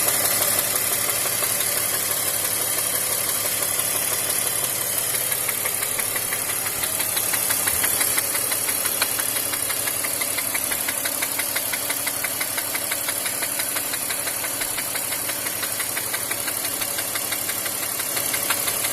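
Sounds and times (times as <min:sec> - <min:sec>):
car engine running: 0:00.0 - 0:18.9
metallic engine knock: 0:05.1 - 0:18.9.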